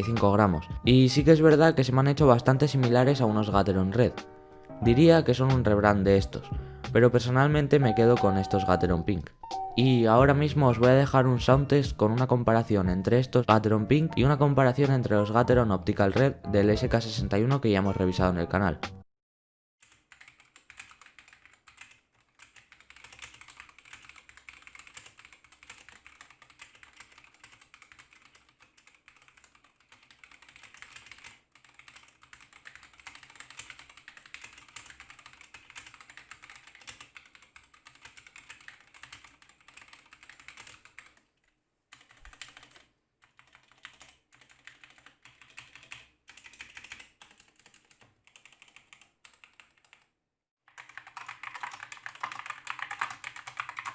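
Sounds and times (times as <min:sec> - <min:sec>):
typing on mechanical keyboard: 0:19.8 - 0:41.3, 0:41.9 - 0:50.1, 0:50.7 - 0:53.9.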